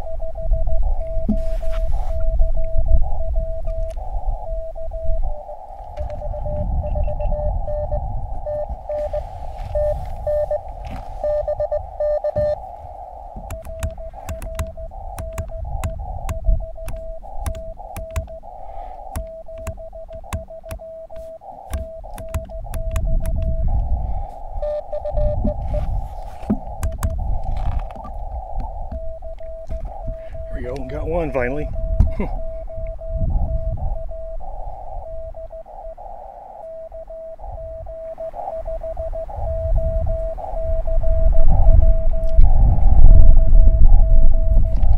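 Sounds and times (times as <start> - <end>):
morse code sidetone beeps: 0.0 - 44.9
radio band hiss: 8.6 - 32.3
sharp keying clicks: 13.3 - 23.9, 26.5 - 30.9.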